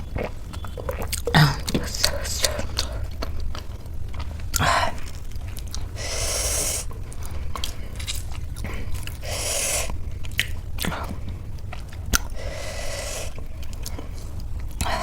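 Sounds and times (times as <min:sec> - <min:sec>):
crunchy chewing and biting: 0:00.0 - 0:15.0
loud breaths: 0:06.0 - 0:08.0, 0:08.6 - 0:10.1, 0:12.3 - 0:15.0.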